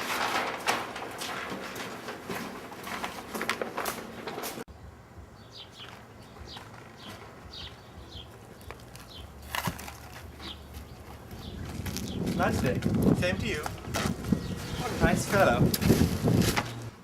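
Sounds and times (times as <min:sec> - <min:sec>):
small birds chirping: 0:04.7 - 0:13.5, 0:14.2 - 0:15.6.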